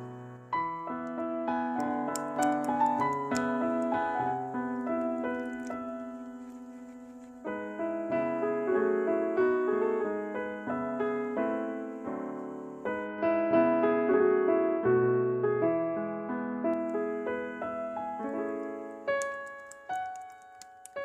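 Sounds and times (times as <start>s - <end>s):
piano music: 0.0s - 21.0s.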